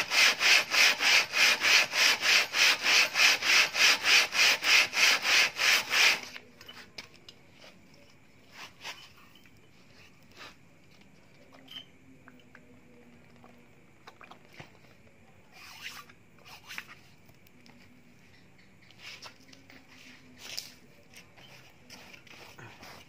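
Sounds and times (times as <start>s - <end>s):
metal scraping on sandpaper: 0.0s - 6.4s, 8.4s - 10.6s, 15.5s - 17.2s, 18.9s - 23.0s.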